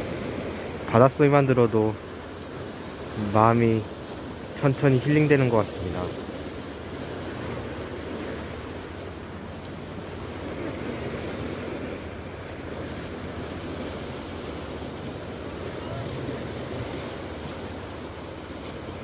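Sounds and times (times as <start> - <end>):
sea waves washing in: 0.0 - 19.0.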